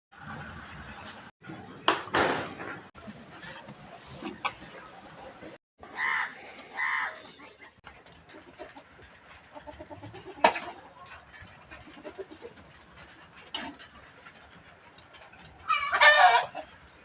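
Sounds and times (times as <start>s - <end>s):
livestock and poultry calls: 5.8s - 17.0s.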